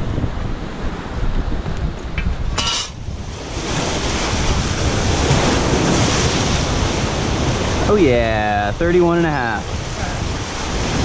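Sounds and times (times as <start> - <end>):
wind buffeting microphone: 0.0 - 11.0
short metallic clink: 2.6 - 3.0
surf hissing: 2.6 - 11.0.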